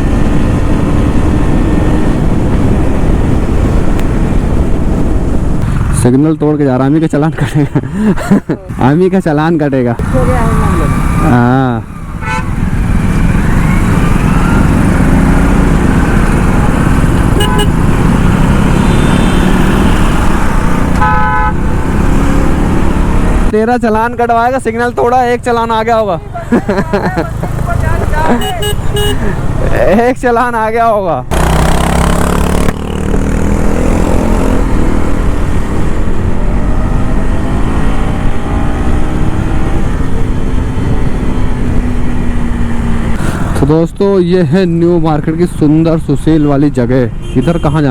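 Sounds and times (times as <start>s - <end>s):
motorcycle engine in traffic: 0.0s - 47.9s
vehicle horn tooting: 12.2s - 12.6s, 17.3s - 17.8s, 20.9s - 21.6s, 28.3s - 29.3s, 47.2s - 47.9s.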